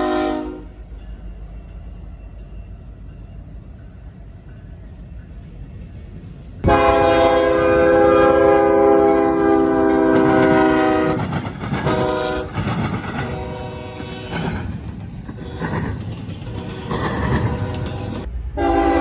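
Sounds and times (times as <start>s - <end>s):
locomotive air horn blasts: 0.0s - 0.8s, 6.6s - 12.6s, 13.2s - 14.4s, 16.5s - 19.0s
train rolling rumble: 0.0s - 19.0s.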